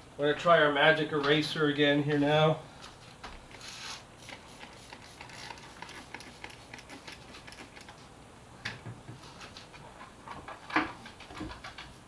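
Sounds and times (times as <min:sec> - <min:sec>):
eraser rubbing painted metal: 0:03.5 - 0:07.5.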